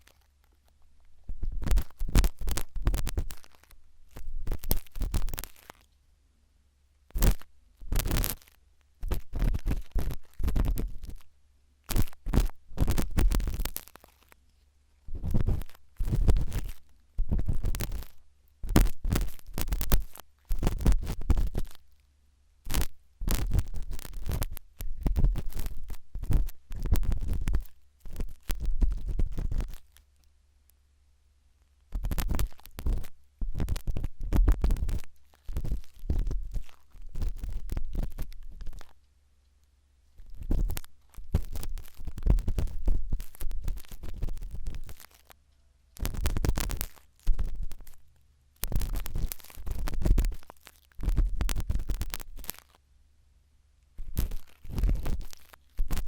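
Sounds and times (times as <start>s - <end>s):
toothpick scraping in ear: 15.1s - 21.8s, 31.9s - 38.9s, 40.2s - 45.3s, 54.1s - 56.0s.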